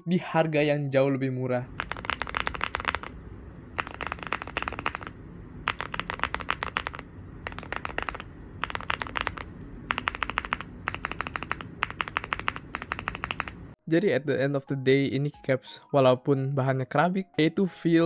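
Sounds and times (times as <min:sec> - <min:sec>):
mechanical keyboard typing: 0:01.8 - 0:03.2, 0:03.8 - 0:13.7.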